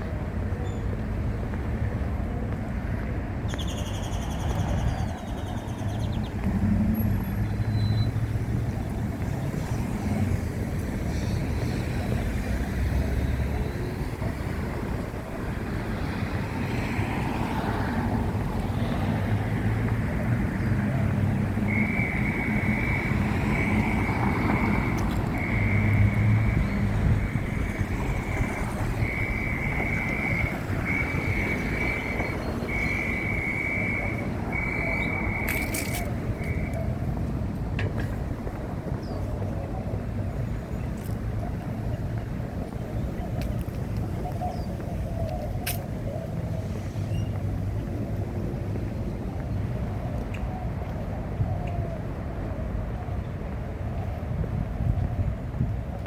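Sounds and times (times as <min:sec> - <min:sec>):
vehicle traffic rumble: 0:00.0 - 0:56.0
wind on microphone: 0:04.3 - 0:56.0
whistled note: 0:21.7 - 0:23.8.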